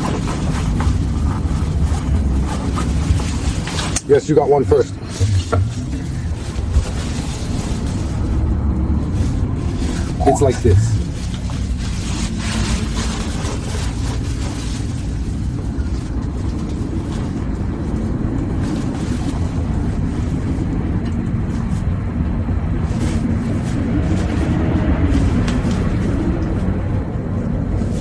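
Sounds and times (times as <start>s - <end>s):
low mechanical rumble: 0.0s - 28.0s.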